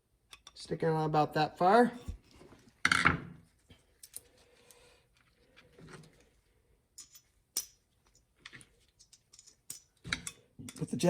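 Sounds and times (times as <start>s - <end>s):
small metal parts clicking: 7.0s - 10.9s.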